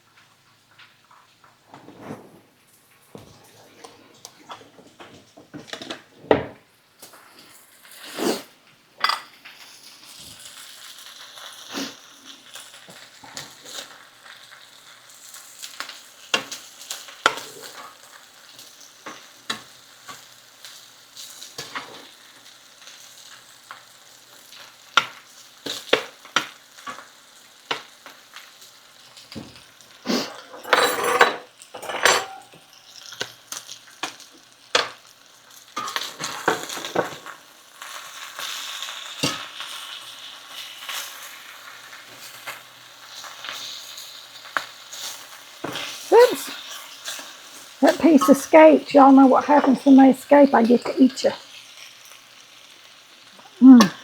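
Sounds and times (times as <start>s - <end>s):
fries sizzling in oil: 0.0s - 54.0s
utensils scraping pan: 30.2s - 32.6s.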